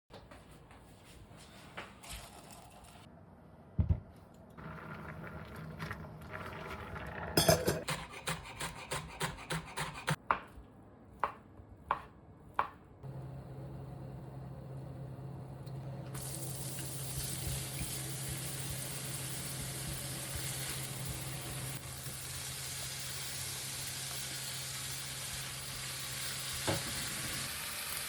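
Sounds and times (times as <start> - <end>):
knife chopping on board: 11.2 - 12.8.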